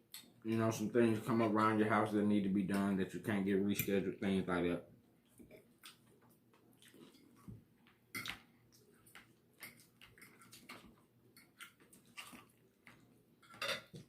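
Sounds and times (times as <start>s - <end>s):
cutlery against a plate: 3.7s - 4.0s, 8.1s - 8.4s, 9.6s - 12.4s, 13.4s - 14.0s.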